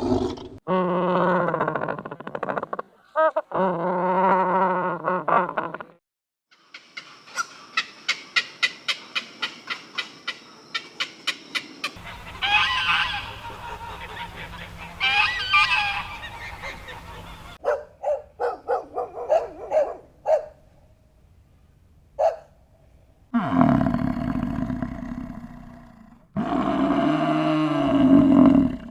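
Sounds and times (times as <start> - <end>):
waterfowl calling: 6.8 - 17.6.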